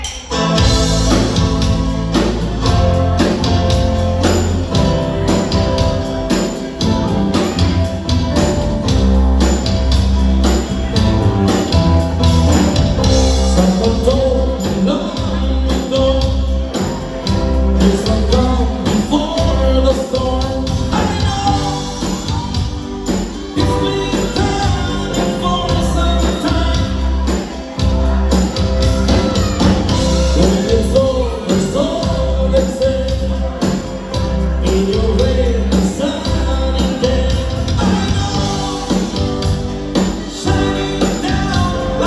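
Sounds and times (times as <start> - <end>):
bass: 0.0 - 42.0
drum beat: 0.0 - 42.0
rock band playing: 0.0 - 42.0
person singing: 10.5 - 42.0.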